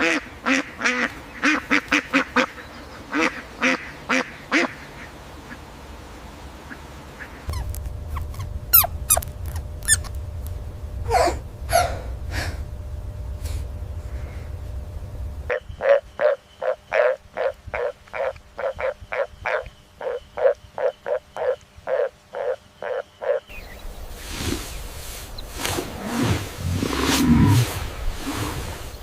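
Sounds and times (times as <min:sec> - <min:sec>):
low rumbling noise: 0:05.2 - 0:16.2, 0:23.5 - 0:29.0
animal calling: 0:15.5 - 0:23.5.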